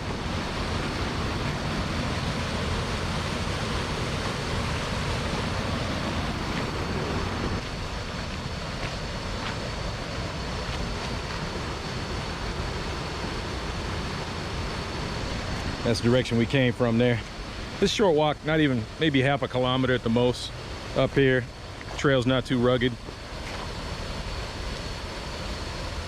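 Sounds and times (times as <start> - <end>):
waterfall rushing water: 0.0 - 8.2.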